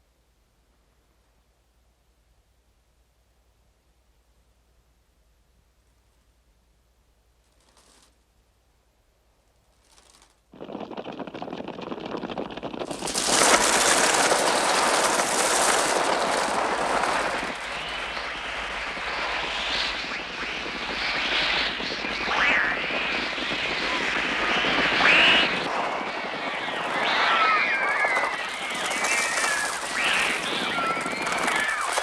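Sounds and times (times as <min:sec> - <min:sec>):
flapping wings: 0:07.5 - 0:08.2, 0:09.7 - 0:32.0
rush of noise: 0:10.6 - 0:32.0
rising and falling shrieks: 0:12.9 - 0:32.0
harsh bird calls: 0:26.7 - 0:32.0.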